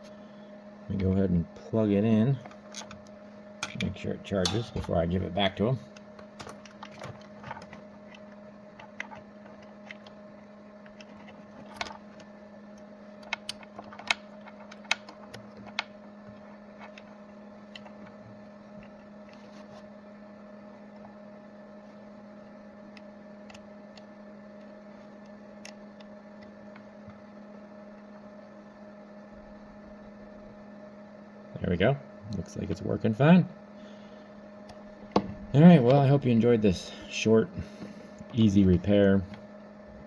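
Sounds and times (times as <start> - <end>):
steady electrical hum: 0.0 - 40.0
charging cable clicks and taps: 5.9 - 10.2, 10.8 - 18.2.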